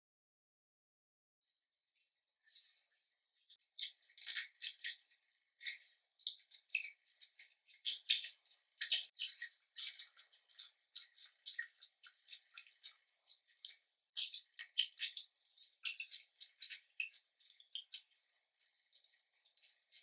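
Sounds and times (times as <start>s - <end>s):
slime squeezing wet clicks: 5.6s - 18.2s.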